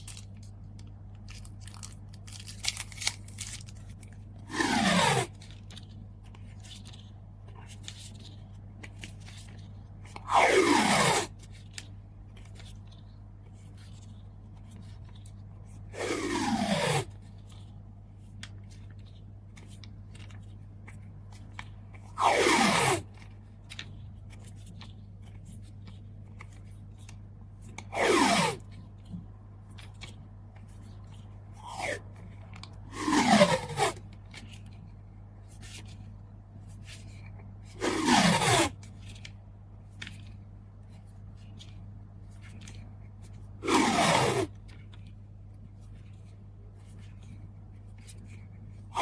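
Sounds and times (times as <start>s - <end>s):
packing tape screeching off roll: 4.5s - 5.3s, 10.3s - 11.3s, 16.0s - 17.1s, 22.2s - 23.0s, 28.0s - 28.6s, 31.6s - 32.0s, 32.9s - 34.0s, 37.8s - 38.7s, 43.6s - 44.5s.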